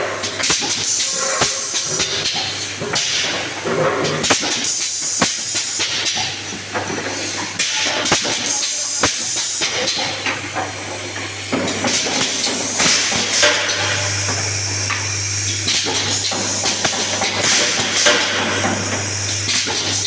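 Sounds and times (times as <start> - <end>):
steady low machine hum: 12.7 - 20.0.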